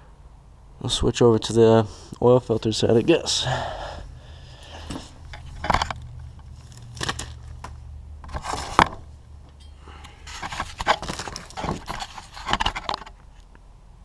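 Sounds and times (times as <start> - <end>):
faint low hum: 0.0 - 14.0
metal tools clinking and scraping: 4.9 - 7.6, 9.5 - 12.9.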